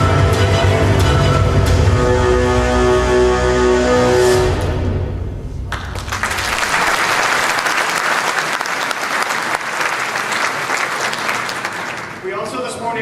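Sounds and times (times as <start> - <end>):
audience applause: 5.7 - 12.2.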